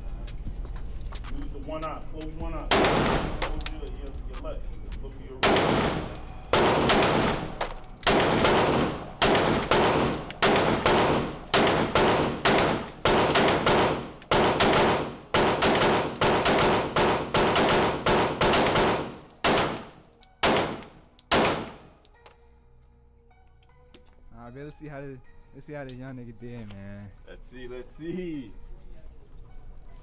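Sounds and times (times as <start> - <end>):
handgun shots with echo: 2.7 - 3.8, 5.4 - 22.0.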